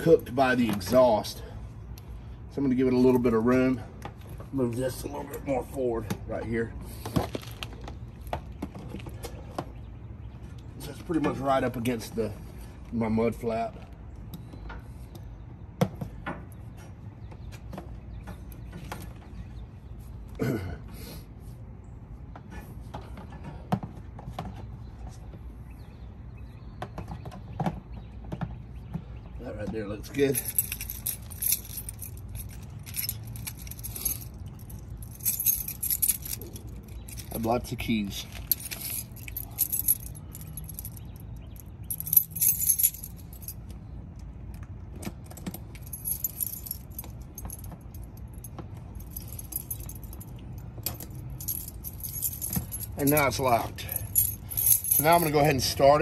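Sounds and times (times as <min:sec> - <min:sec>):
keys jangling: 0:30.2 - 0:43.7, 0:45.3 - 0:55.8.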